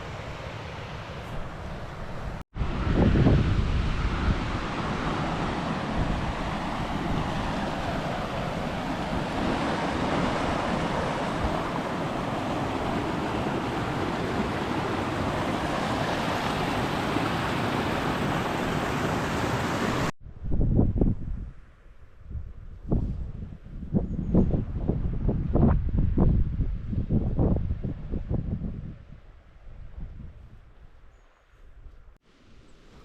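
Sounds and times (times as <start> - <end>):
wind buffeting microphone: 1.2 - 31.1
river rapids rushing: 4.4 - 20.1.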